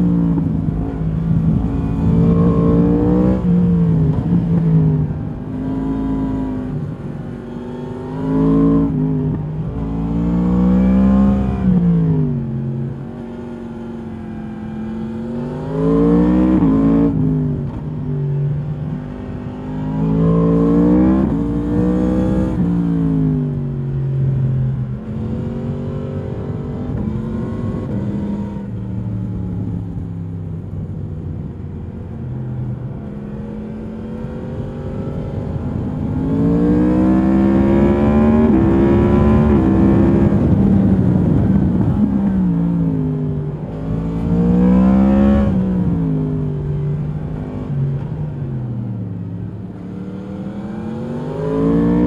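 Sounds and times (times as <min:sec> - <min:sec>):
motorcycle engine revving: 0:00.0 - 0:17.8, 0:33.1 - 0:52.0.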